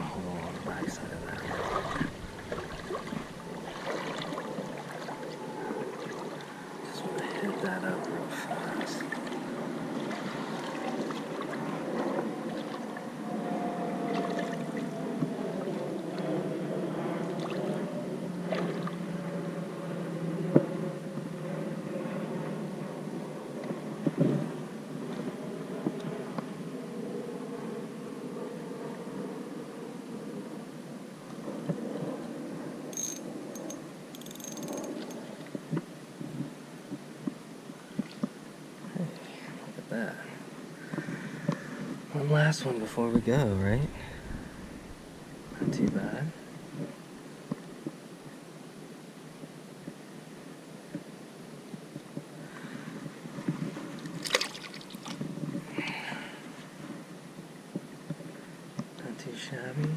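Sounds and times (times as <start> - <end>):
creek water trickling: 0.0 - 11.6, 54.0 - 55.2
steady rushing background noise: 0.0 - 14.1, 41.8 - 48.0
fishing reel clicking: 33.0 - 35.2.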